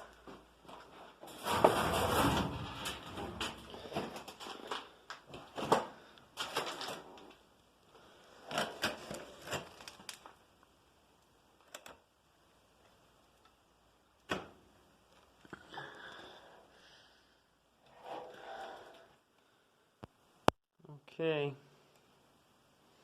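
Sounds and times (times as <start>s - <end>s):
metal parts knocking and scraping: 1.3s - 4.6s.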